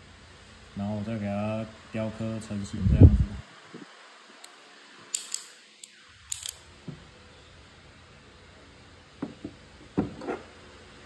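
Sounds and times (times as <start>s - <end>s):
sharp clicks of rifle parts: 4.4s - 6.6s.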